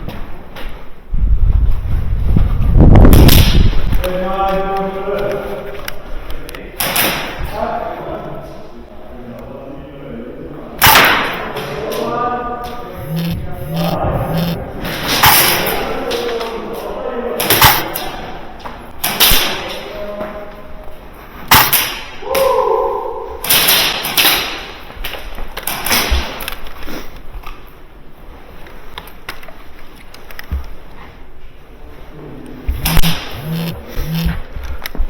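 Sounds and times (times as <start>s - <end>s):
distant voices: 3.9s - 25.6s
airsoft guns firing: 10.8s - 11.6s, 13.0s - 16.0s, 17.4s - 18.2s, 19.0s - 19.8s, 21.5s - 22.2s, 23.4s - 24.8s
steady tone: 12.9s - 15.7s, 32.7s - 34.5s.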